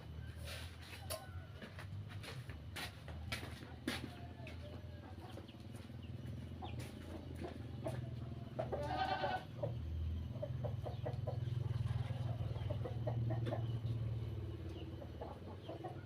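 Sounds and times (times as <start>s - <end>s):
goat bleating: 8.7s - 9.5s.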